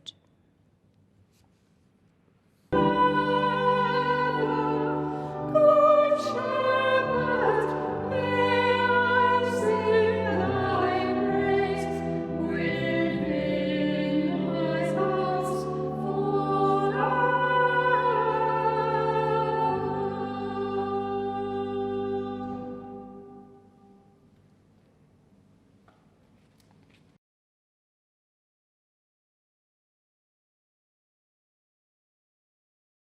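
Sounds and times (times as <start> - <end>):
keyboard accompaniment: 2.8 - 24.2.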